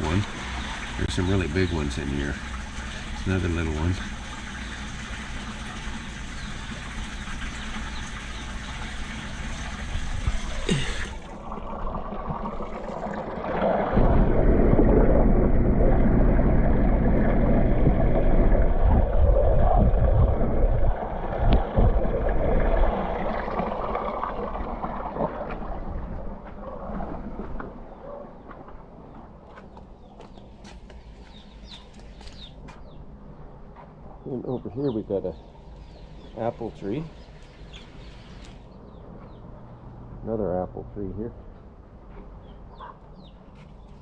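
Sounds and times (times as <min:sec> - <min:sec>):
water running and splashing: 0:00.0 - 0:29.2
loud low rumble: 0:13.8 - 0:22.9.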